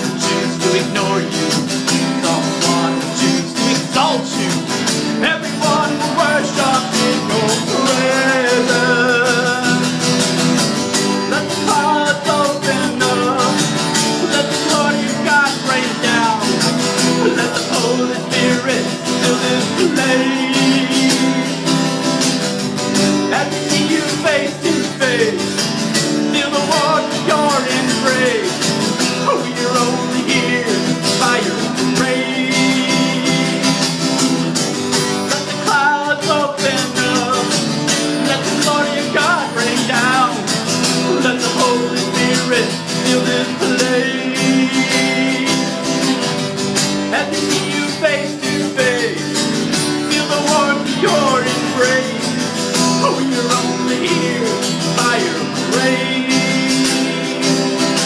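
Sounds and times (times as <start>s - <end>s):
country gospel guitar music: 0.0s - 58.0s.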